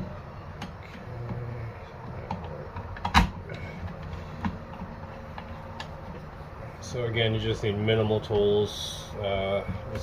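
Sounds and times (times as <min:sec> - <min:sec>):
plastic parts clicking and knocking: 0:02.1 - 0:05.9.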